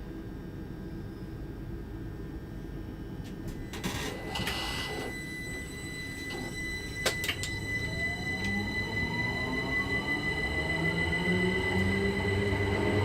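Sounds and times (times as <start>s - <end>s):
train low rumble: 0.0s - 13.0s
steady high whine: 3.5s - 13.0s.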